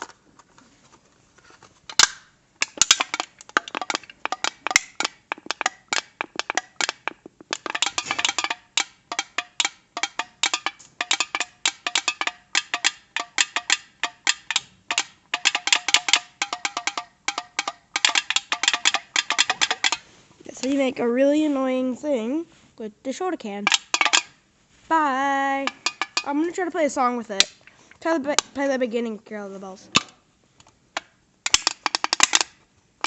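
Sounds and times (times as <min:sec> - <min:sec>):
soda can clicking and popping: 0:01.9 - 0:20.0, 0:30.0 - 0:32.6.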